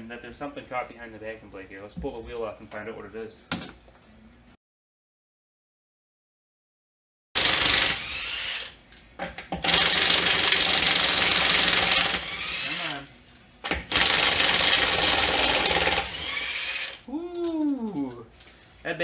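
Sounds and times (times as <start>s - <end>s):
impact wrench hammering lug nuts: 9.2s - 12.4s, 13.6s - 16.8s.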